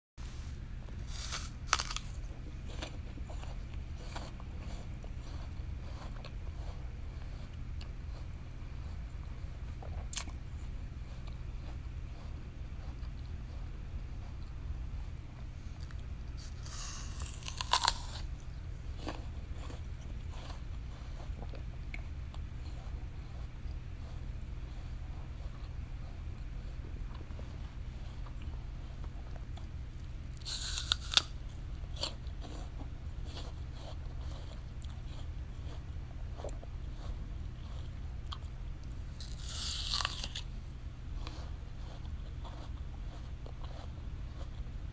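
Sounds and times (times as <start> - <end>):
apple crunching: 0.9 - 8.0, 9.9 - 10.4, 15.7 - 22.5, 28.2 - 44.5
crunch of apple bite: 1.0 - 4.8, 15.8 - 20.5, 30.3 - 32.7, 39.2 - 40.5
chewing crunches: 1.0 - 7.9, 9.8 - 10.4, 15.7 - 22.8, 28.2 - 37.0, 37.6 - 40.6.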